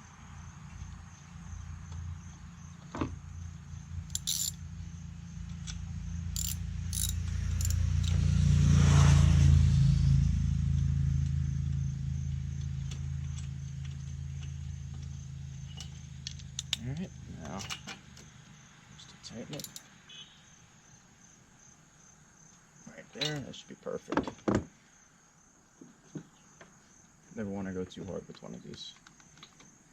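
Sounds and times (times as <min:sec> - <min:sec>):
vehicle passing: 0:06.3 - 0:13.3
light metal clicks: 0:15.6 - 0:18.3, 0:19.5 - 0:19.9.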